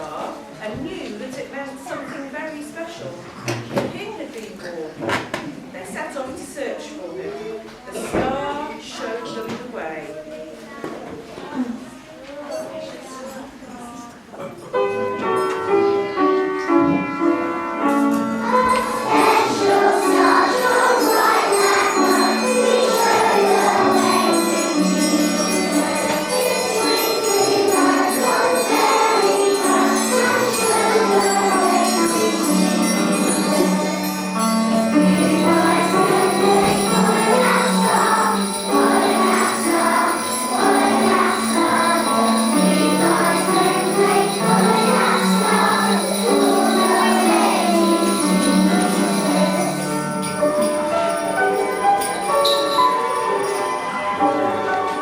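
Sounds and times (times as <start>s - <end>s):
christmas music: 14.8s - 55.0s
jingle bells shaken: 18.0s - 54.7s.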